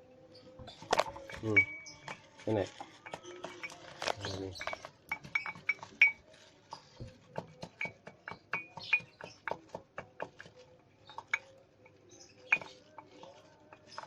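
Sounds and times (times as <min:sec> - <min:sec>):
leaves pounded in hard vessel: 0:00.8 - 0:11.6.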